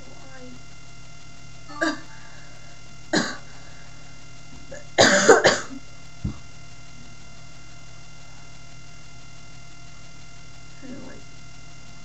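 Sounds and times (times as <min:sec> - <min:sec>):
person coughing dryly: 0:01.7 - 0:02.2, 0:03.1 - 0:03.6, 0:04.7 - 0:05.8.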